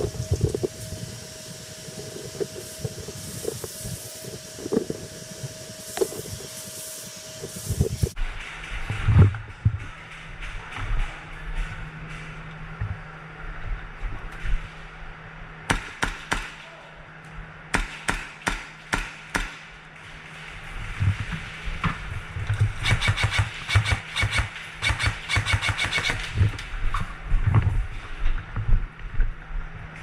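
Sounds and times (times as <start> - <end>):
airsoft guns firing: 15.7 - 16.8, 17.7 - 19.7, 22.8 - 26.4.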